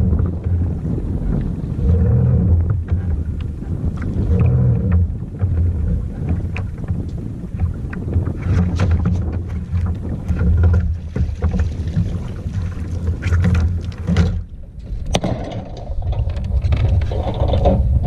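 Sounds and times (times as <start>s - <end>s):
wind buffeting microphone: 0.0s - 18.0s
sharp knocks and clicks: 13.2s - 17.9s.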